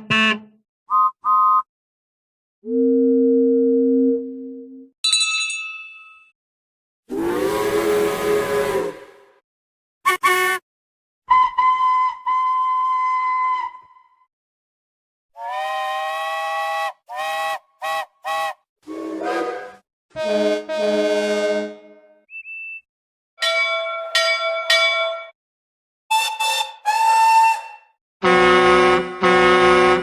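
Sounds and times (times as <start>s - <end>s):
steam engine whistles and toots: 0.9s - 1.7s, 7.1s - 9.2s, 11.3s - 14.0s, 15.4s - 21.1s, 26.1s - 30.0s.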